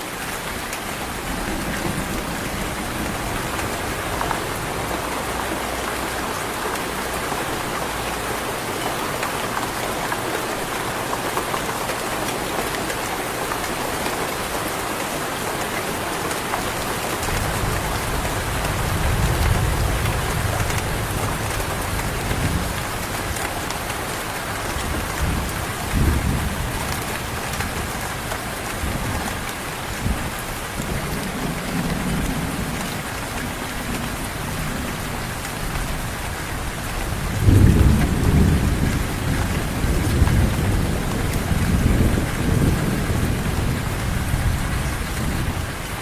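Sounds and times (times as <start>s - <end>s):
heavy rain falling: 0.0s - 46.0s
distant thunder rumbling: 16.5s - 24.0s, 24.6s - 45.8s.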